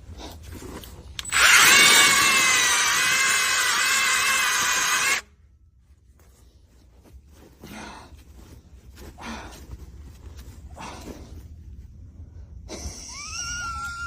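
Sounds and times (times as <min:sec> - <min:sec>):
power tool high whine: 0:01.2 - 0:05.2.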